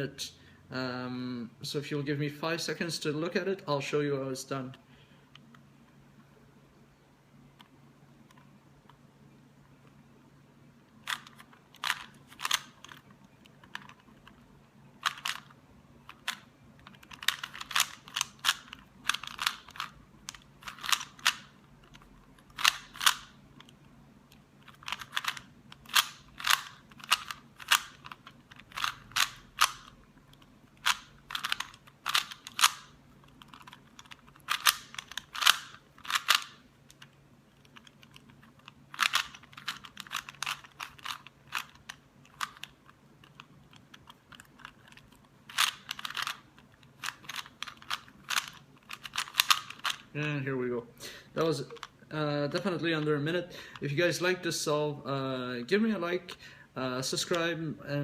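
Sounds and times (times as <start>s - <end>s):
puzzle cube plastic clicking: 10.9s - 50.2s, 51.4s - 53.9s.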